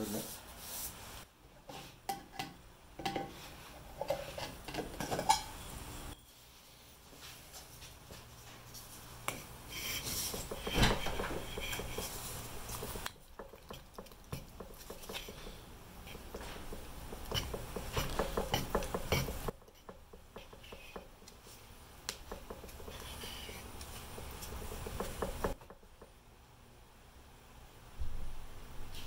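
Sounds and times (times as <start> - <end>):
spreader scraping filler on panel: 9.7 - 13.0.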